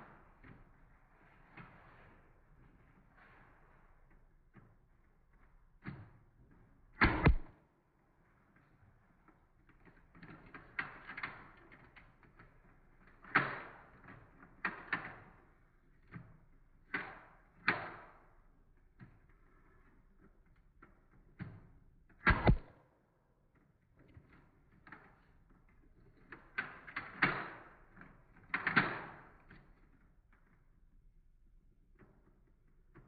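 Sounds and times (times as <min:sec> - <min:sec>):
sharp plastic clacks: 0:07.0 - 0:07.5, 0:21.3 - 0:22.8, 0:26.2 - 0:30.4.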